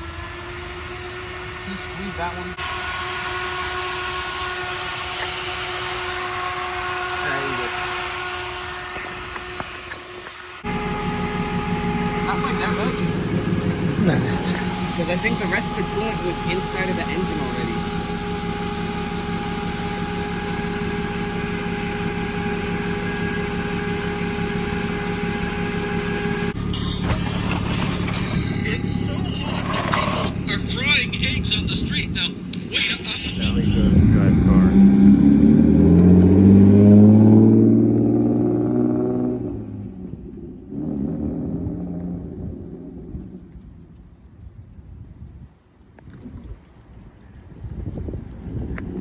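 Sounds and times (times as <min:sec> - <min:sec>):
car engine idling: 0:00.0 - 0:37.2
engine whine: 0:00.0 - 0:44.4.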